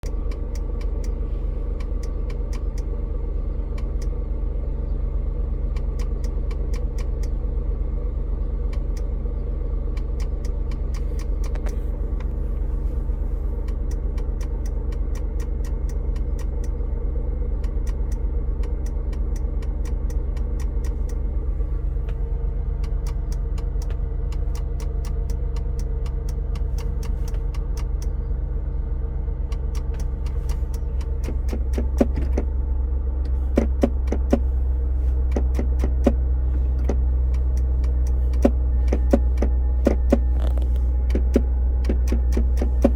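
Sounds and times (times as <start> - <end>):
car engine idling: 0.0 - 42.9
sharp repeated clicking: 5.7 - 7.4, 9.9 - 11.7, 13.6 - 16.8, 17.6 - 21.2, 22.8 - 28.1.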